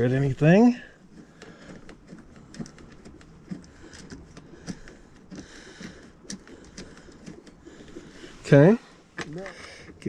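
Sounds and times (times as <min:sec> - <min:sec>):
parts knocking lightly: 0:01.0 - 0:08.3
fastener clicks and taps: 0:01.1 - 0:08.0.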